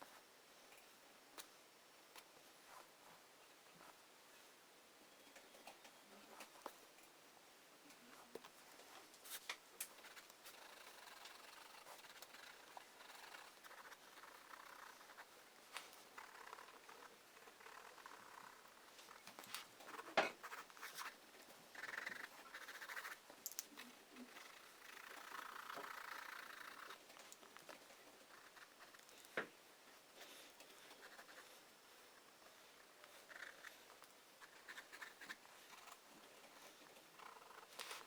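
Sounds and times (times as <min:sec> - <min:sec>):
pencil scratching on paper: 0:10.0 - 0:23.2, 0:24.2 - 0:27.0, 0:30.2 - 0:31.6, 0:34.4 - 0:36.0.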